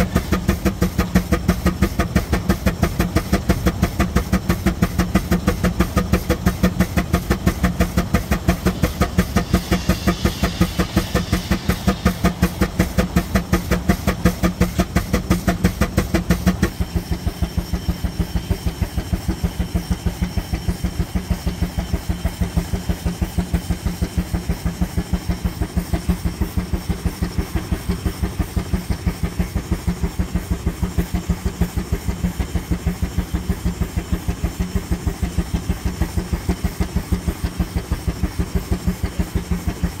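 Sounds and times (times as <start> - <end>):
steam engine exhaust chuffing: 0.0 - 40.0
steam hissing: 0.0 - 40.0.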